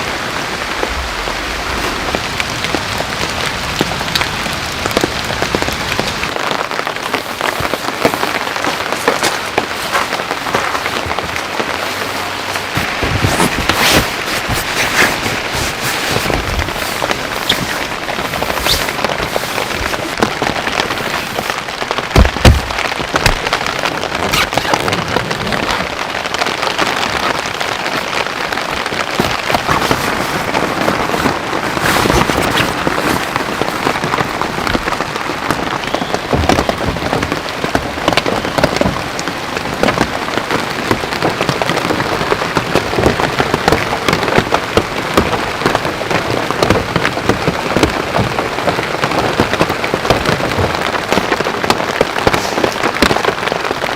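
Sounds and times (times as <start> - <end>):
heavy rain falling: 0.0 - 53.9.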